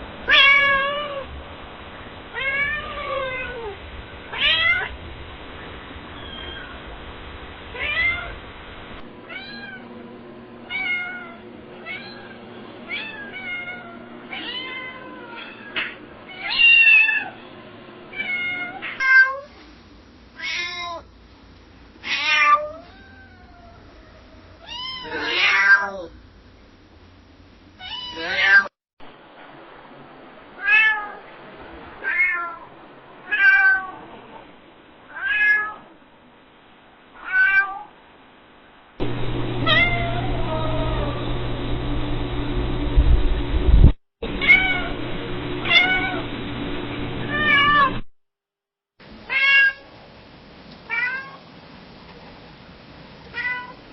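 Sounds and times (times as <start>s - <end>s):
steady low hum: 0.0s - 16.4s, 19.5s - 27.9s, 39.0s - 48.1s
cat meowing: 0.3s - 1.3s, 2.3s - 4.9s, 9.3s - 9.8s, 10.7s - 17.4s, 18.1s - 19.5s, 20.4s - 21.0s, 22.0s - 26.1s, 27.8s - 28.7s, 33.3s - 34.1s, 35.1s - 35.9s, 37.2s - 37.9s, 39.6s - 41.2s, 44.4s - 45.0s, 45.6s - 46.3s, 47.3s - 48.0s, 49.3s - 49.8s, 50.9s - 51.4s, 53.3s - 53.8s.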